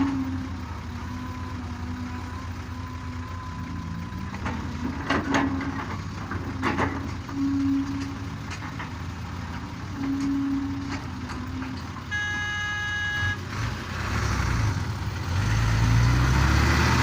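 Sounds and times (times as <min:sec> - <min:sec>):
excavator diesel engine: 0:00.0 - 0:17.0
hydraulic whine: 0:09.9 - 0:13.4.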